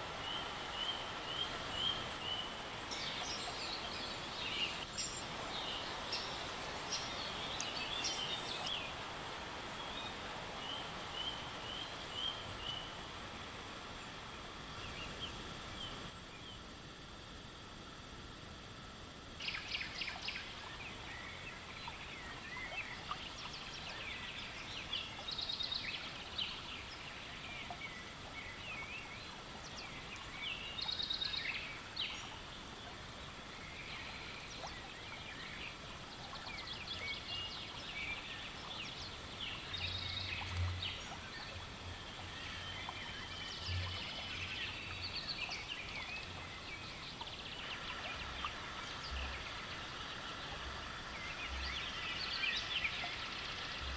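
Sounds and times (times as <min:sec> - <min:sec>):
birds chirping: 0:00.0 - 0:16.6
outdoor hiss: 0:00.0 - 0:53.9.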